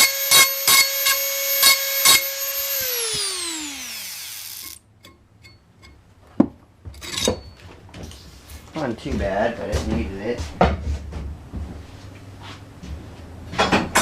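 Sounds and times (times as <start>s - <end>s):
rotary tool whining: 0.0s - 4.8s
bit grinding steel edge: 0.0s - 6.0s.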